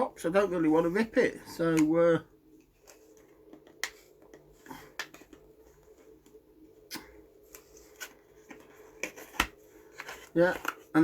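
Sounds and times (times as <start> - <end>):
hands clicking and tapping a box: 8.5 - 10.8.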